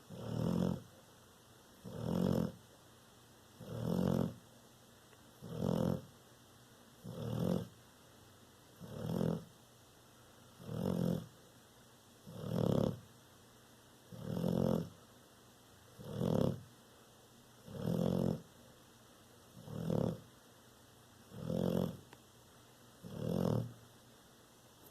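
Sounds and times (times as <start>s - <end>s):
dog snoring: 0.0s - 0.9s, 1.8s - 2.6s, 3.6s - 4.4s, 5.4s - 6.1s, 7.0s - 7.8s, 8.8s - 9.5s, 10.6s - 11.4s, 12.2s - 13.1s, 14.1s - 15.0s, 16.0s - 16.7s, 17.6s - 18.5s, 19.5s - 20.3s, 21.3s - 22.1s, 23.0s - 23.8s.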